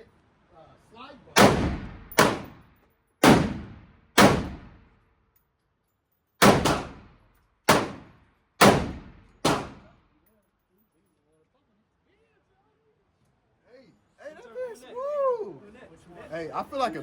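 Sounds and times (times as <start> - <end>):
rifle gunshots: 1.4 - 2.6, 3.2 - 4.8, 6.4 - 10.0.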